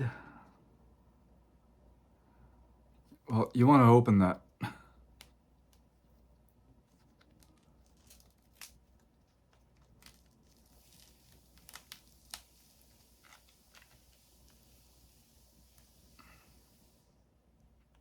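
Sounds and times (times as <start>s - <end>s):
fruit shell tearing and crackling: 7.0s - 14.1s.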